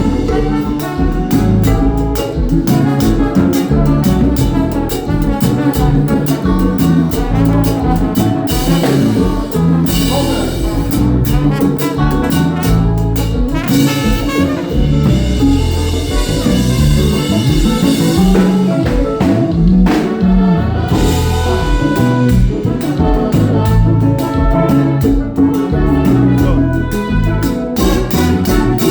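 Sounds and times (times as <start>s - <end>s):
bass guitar: 0.0s - 28.9s
drum kit: 0.0s - 28.9s
trumpet and saxophone horns: 0.0s - 28.9s.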